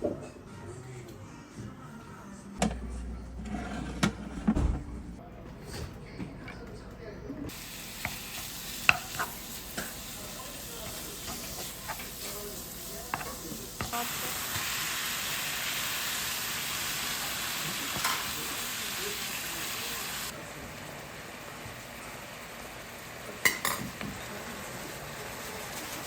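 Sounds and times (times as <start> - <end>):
food sizzling in frying pan: 7.5 - 26.0.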